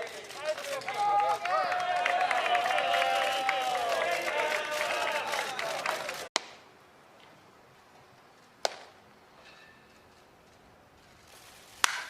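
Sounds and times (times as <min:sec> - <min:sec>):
faint outdoor background: 0:00.0 - 0:12.0
baseball striking cracks: 0:08.6 - 0:09.0, 0:11.8 - 0:12.0.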